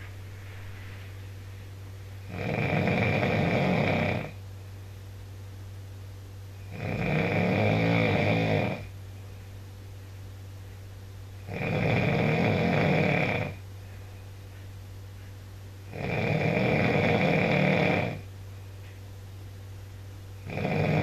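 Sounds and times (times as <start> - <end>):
steady low hum: 0.0 - 21.0
man snoring: 2.2 - 4.4, 6.6 - 8.9, 11.5 - 13.6, 15.9 - 18.2, 20.4 - 21.0.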